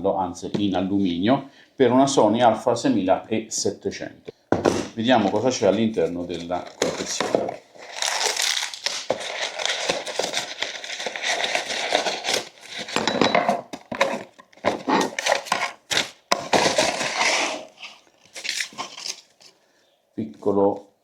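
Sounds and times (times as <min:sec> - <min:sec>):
packaging rustling and crinkling: 0:04.8 - 0:19.6.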